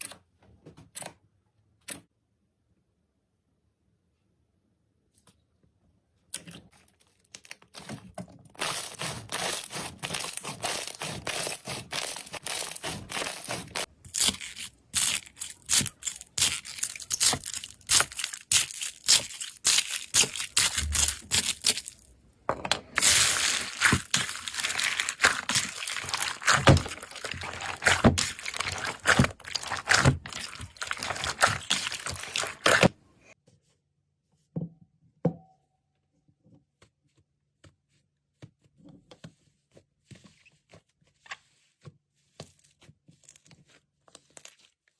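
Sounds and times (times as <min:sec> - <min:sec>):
slime squeezed crackling and popping: 0:14.1 - 0:21.8.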